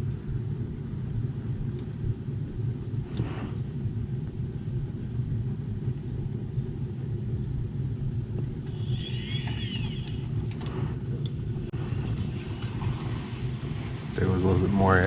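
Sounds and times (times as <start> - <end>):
boiler low rumble: 0.0 - 15.0
high wavering chirps: 8.7 - 10.4.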